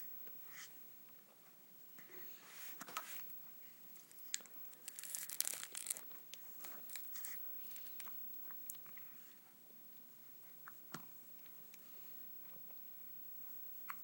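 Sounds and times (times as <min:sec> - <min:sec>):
rustling and crinkling: 0:04.0 - 0:08.0.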